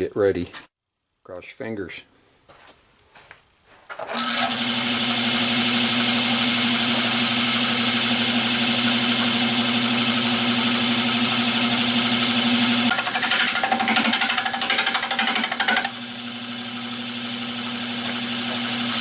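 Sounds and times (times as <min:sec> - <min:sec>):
wood lathe humming: 0:04.1 - 0:19.0
turning tool chattering on wood: 0:12.9 - 0:16.0.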